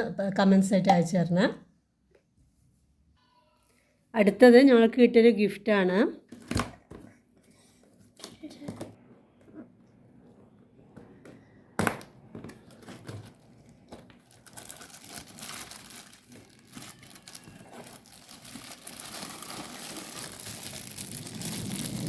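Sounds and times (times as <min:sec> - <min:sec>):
packaging crinkling and tearing: 0:12.6 - 0:22.0.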